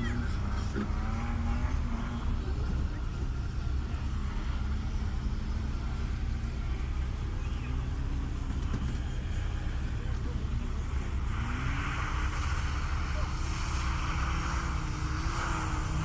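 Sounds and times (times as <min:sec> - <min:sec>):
heavy low rumble: 0:00.0 - 0:16.0
vehicle engine humming: 0:00.0 - 0:16.0.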